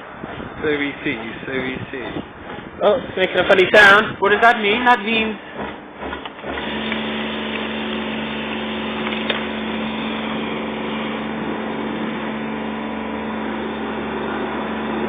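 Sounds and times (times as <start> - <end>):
constant hum: 0.0 - 15.0
pressure washer spraying: 4.6 - 15.0.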